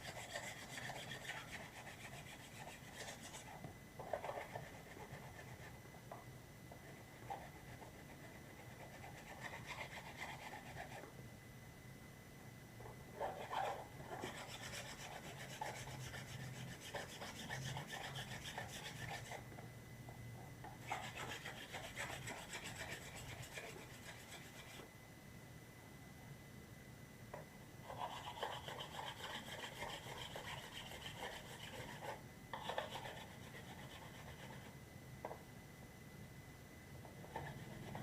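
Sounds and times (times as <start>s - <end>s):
sandpaper rubbing plastic: 0.0s - 5.7s, 13.2s - 19.4s, 27.9s - 34.7s.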